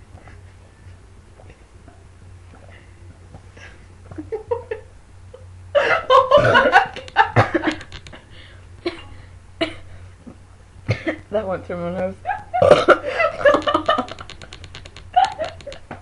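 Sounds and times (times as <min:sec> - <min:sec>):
laughter: 0:04.2 - 0:04.9, 0:05.8 - 0:07.8, 0:12.3 - 0:14.3, 0:15.1 - 0:15.8
girl burping loudly: 0:12.6 - 0:13.0.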